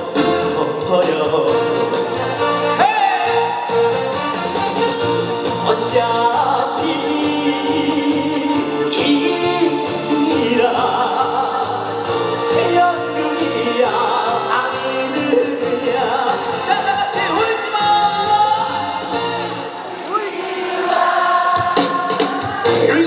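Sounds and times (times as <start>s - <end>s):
person singing: 5.5s - 18.9s.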